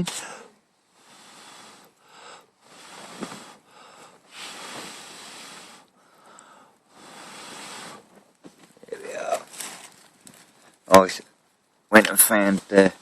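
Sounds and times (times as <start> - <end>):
person blowing into a stove: 4.3 - 5.9, 6.9 - 8.1.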